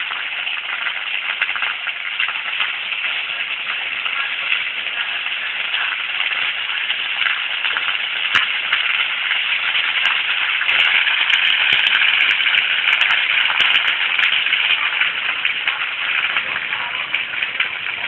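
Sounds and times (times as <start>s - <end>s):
fire hissing and crackling: 0.0s - 18.0s.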